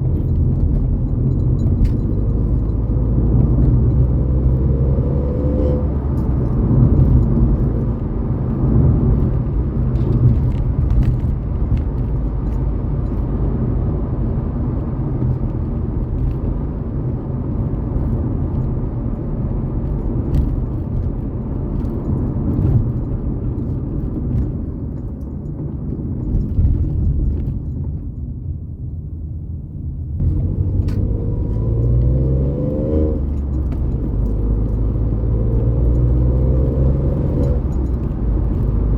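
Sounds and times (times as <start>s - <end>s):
car engine revving: 0.0s - 10.5s, 30.2s - 38.9s.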